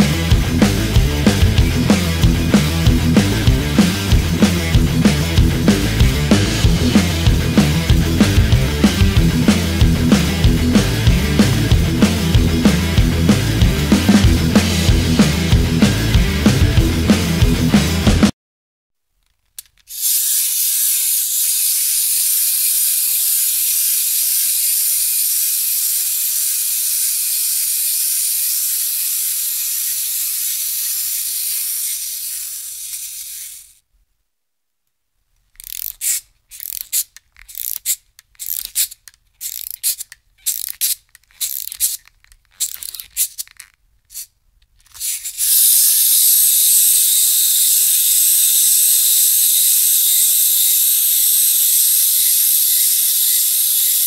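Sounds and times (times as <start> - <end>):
clockwork spring whirring: 0.0 - 18.2, 19.5 - 33.8, 35.6 - 54.0
ratcheting clicks of key winding: 19.3 - 33.8, 35.5 - 54.0.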